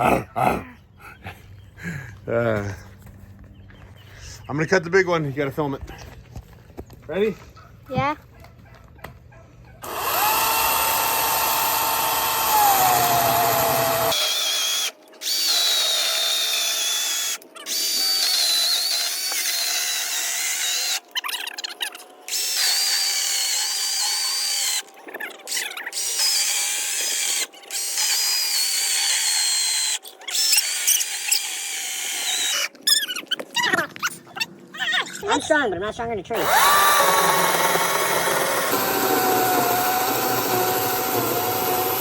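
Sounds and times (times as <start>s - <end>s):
chainsaw cutting wood: 9.8s - 21.0s, 25.9s - 32.7s, 36.4s - 42.0s.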